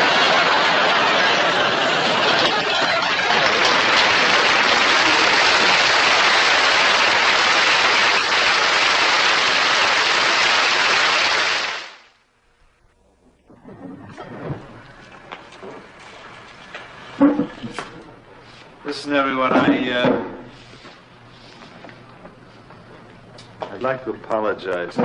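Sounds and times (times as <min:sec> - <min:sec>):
audience applauding: 0:00.0 - 0:12.1.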